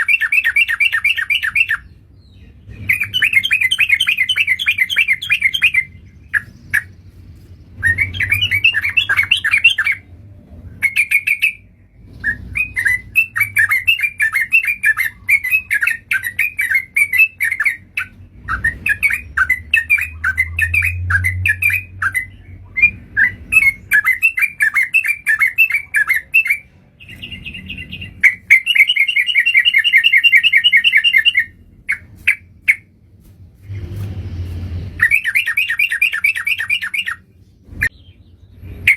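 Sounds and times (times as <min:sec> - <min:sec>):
bulbuls chattering: 0:12.2 - 0:32.9.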